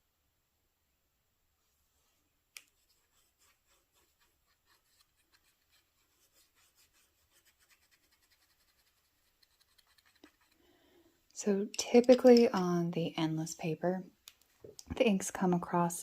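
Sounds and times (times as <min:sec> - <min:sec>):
pen nib scratching on paper: 0:02.8 - 0:10.6.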